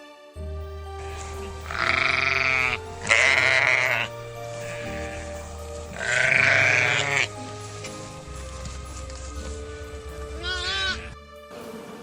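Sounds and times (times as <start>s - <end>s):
background music: 0.0s - 12.0s
sheep bleating: 1.0s - 7.4s, 10.3s - 11.2s.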